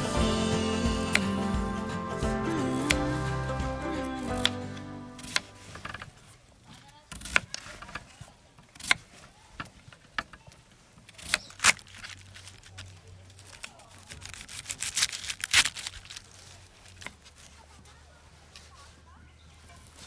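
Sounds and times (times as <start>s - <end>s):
rustling: 11.9s - 20.0s.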